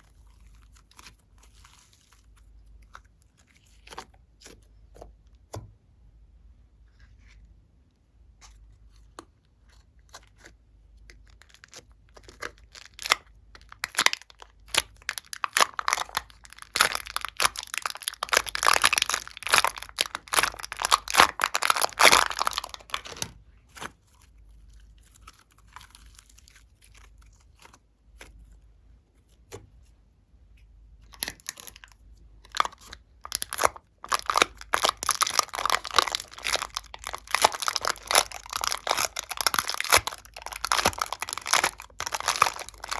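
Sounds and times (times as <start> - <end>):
slime squished by hand: 11.2 - 24.0, 32.5 - 42.9.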